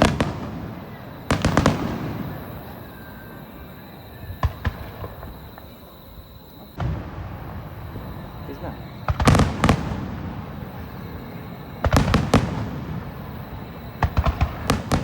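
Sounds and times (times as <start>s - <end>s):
fireworks bangs: 0.0s - 15.0s
fireworks sharp cracks: 0.0s - 15.0s
rumbling echo: 6.8s - 15.0s.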